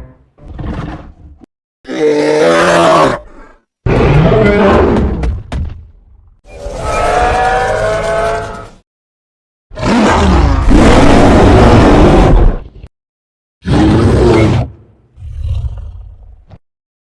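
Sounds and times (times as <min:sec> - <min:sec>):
giant ape roaring: 0:01.9 - 0:04.9, 0:09.8 - 0:12.7, 0:13.6 - 0:16.2.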